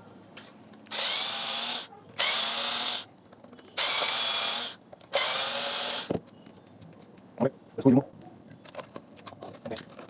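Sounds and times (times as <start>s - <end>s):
power drill whining: 0.9s - 3.1s, 3.8s - 6.1s.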